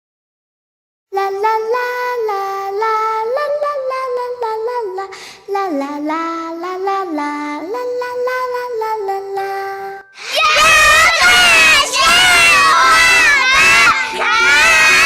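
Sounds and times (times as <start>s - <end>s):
young children singing: 6.6s - 15.0s.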